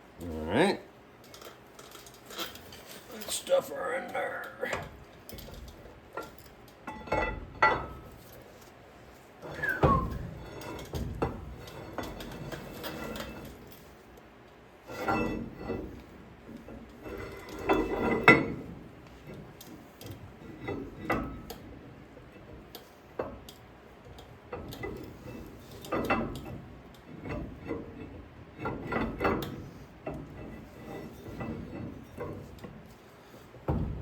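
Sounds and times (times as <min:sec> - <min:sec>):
metal tools clinking: 0:01.2 - 0:03.6
loud metal clunks: 0:09.6 - 0:10.4, 0:33.6 - 0:34.0.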